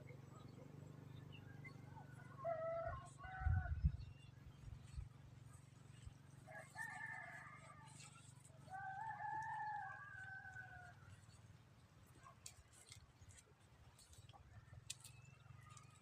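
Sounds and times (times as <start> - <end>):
rooster crowing: 2.2 - 3.8, 6.5 - 8.0, 8.7 - 11.0.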